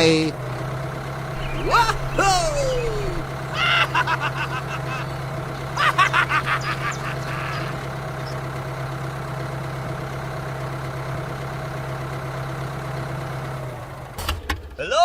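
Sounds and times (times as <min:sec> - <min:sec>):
low mechanical hum: 0:01.2 - 0:09.0
sharp honking calls: 0:01.4 - 0:03.9, 0:06.6 - 0:08.0.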